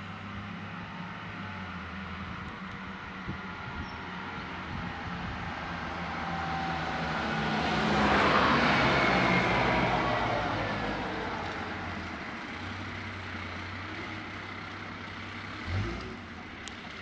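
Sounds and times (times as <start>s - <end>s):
fire engine driving past: 0.0s - 17.0s.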